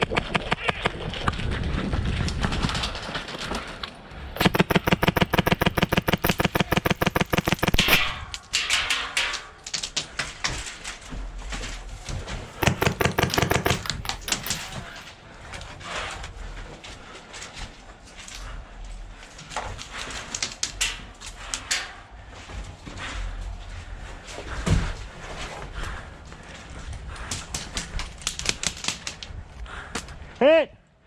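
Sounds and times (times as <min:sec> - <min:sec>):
airsoft rifle firing: 0:04.4 - 0:08.2, 0:12.6 - 0:15.1.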